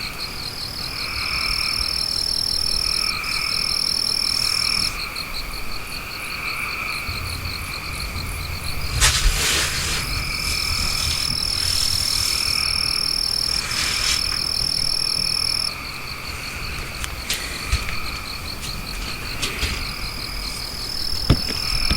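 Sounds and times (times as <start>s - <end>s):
frogs croaking: 0.0s - 21.9s
insects chirping: 0.0s - 21.9s
noisy swishes: 6.8s - 21.8s
high thin whine: 7.0s - 15.5s.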